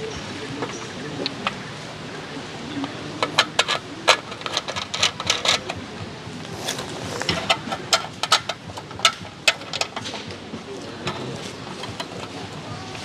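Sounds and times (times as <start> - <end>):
sharp clicks and knocks: 3.2 - 5.8, 6.7 - 12.5.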